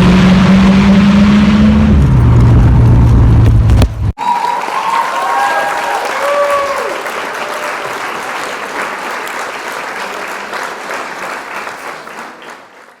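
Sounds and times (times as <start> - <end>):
crowd applause: 4.2 - 13.0.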